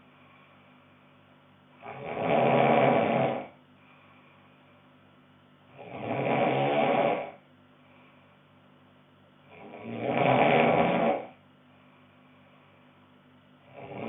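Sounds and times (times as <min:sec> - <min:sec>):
faint steady hum: 0:00.0 - 0:14.0
person snoring: 0:01.8 - 0:03.6, 0:05.7 - 0:07.4, 0:09.5 - 0:11.4, 0:13.6 - 0:14.0.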